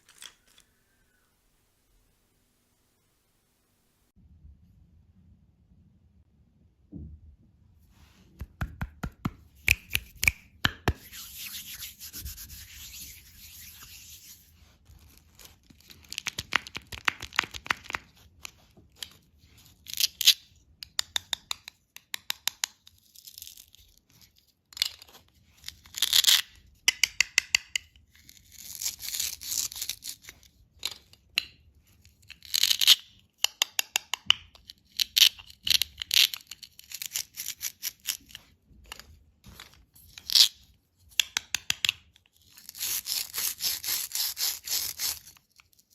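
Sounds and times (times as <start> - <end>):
sharp clicks and taps: 8.3 - 11.1
plastic wrappers rubbed and torn: 10.9 - 18.7, 42.6 - 45.9.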